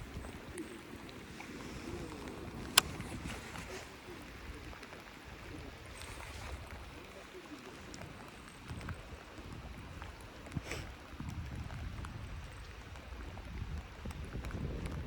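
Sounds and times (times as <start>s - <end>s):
light ticks: 0.0s - 15.0s
rain and lake water hiss: 0.0s - 15.0s
wind rumbling on microphone: 0.0s - 15.0s.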